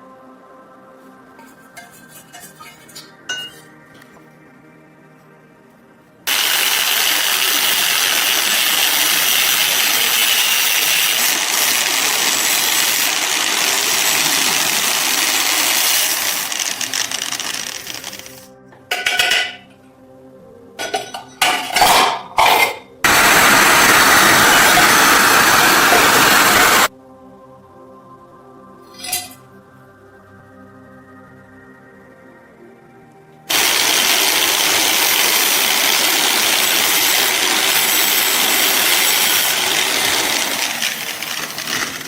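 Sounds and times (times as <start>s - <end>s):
power tool on rusty metal: 6.3s - 18.5s, 23.1s - 26.9s, 33.5s - 42.0s.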